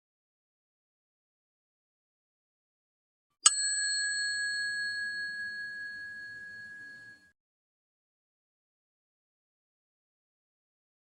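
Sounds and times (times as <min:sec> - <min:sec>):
small bowl bell ringing: 0:03.4 - 0:07.4.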